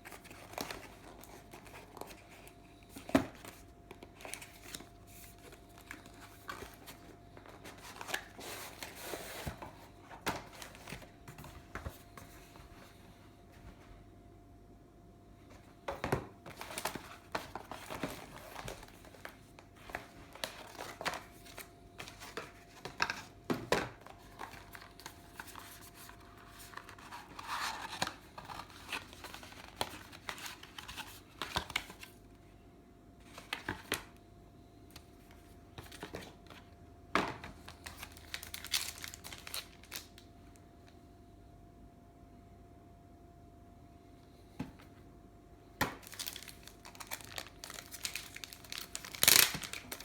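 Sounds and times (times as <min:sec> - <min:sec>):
packaging crinkling and tearing: 0:37.6 - 0:40.3, 0:45.9 - 0:50.0.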